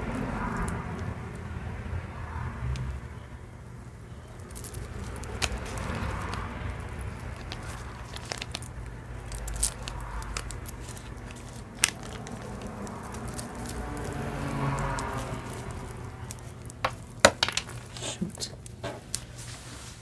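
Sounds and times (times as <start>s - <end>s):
plastic bags crinkling: 4.2s - 19.6s
jewelry clicking: 4.4s - 18.0s.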